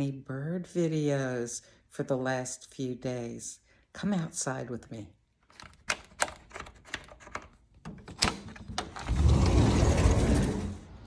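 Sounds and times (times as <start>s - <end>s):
sliding glass door rolling: 8.7s - 11.0s.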